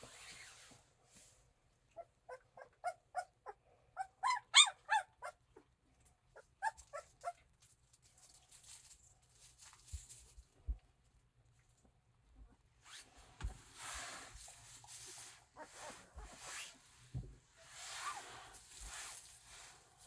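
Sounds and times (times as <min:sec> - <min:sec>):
puppy high-pitched cries: 0:02.0 - 0:05.6, 0:06.3 - 0:07.4
faint rustling: 0:06.0 - 0:20.0.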